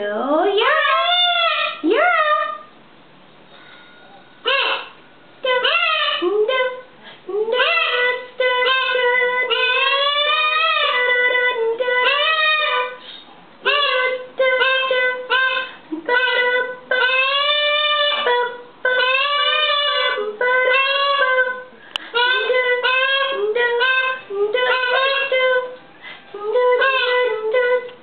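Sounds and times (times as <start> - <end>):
person singing: 5.4 - 13.0, 13.7 - 28.0.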